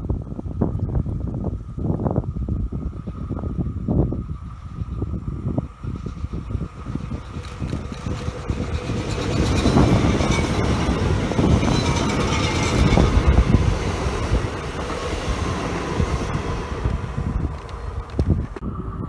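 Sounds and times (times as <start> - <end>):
train rumbling past: 3.0 - 19.0.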